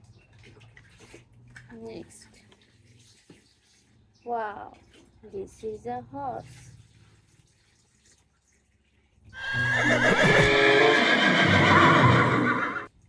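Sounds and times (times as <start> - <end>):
horse whinnying: 9.4 - 12.9.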